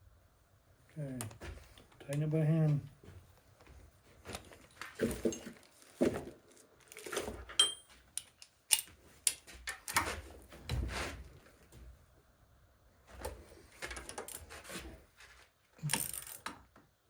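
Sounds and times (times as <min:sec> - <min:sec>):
metal tools clinking: 0:06.9 - 0:09.4
ringing metal clink: 0:07.6 - 0:07.9.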